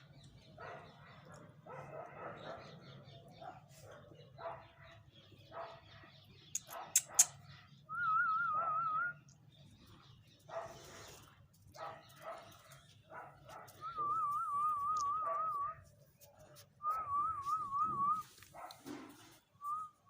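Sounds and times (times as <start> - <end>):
dog barking and yelping: 6.6 - 7.4.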